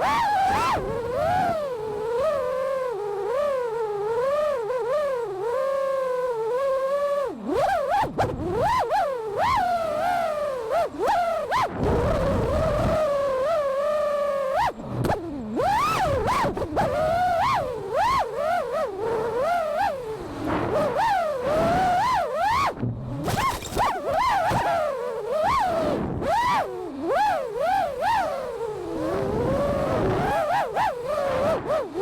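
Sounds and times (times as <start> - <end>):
quadcopter motors whining: 0.0 - 22.6.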